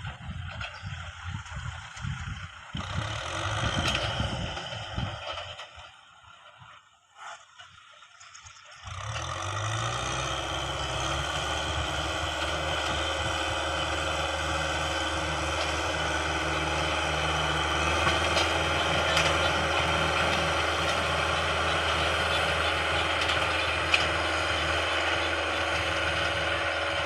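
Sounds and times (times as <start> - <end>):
farm machine engine humming: 0.0 - 27.0.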